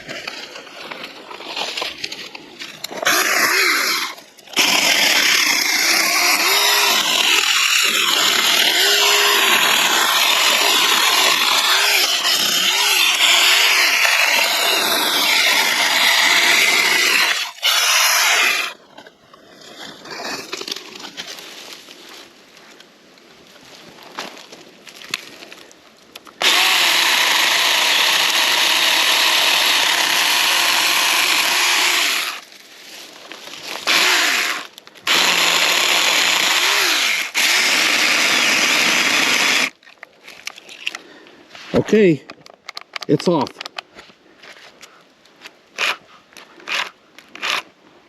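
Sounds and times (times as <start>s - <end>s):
electric chainsaw cutting wood: 2.9s - 18.8s, 26.4s - 32.4s, 33.8s - 39.8s
rustling: 32.4s - 34.0s.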